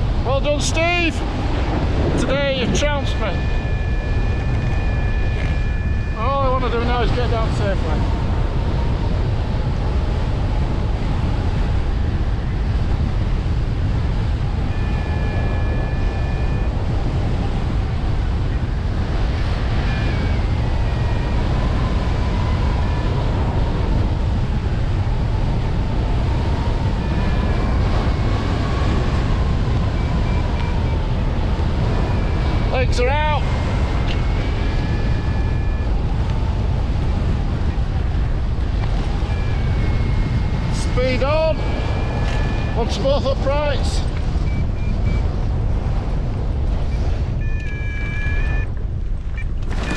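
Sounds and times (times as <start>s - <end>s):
wind rushing over microphone: 0.0s - 49.9s
faint thin whistling tone: 3.1s - 6.6s, 14.7s - 16.7s, 34.1s - 36.0s, 39.2s - 40.5s.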